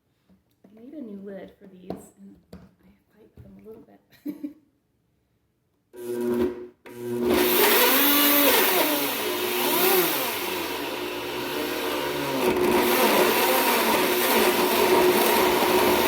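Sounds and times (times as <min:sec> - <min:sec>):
blender chopping vegetables: 0:06.0 - 0:16.0.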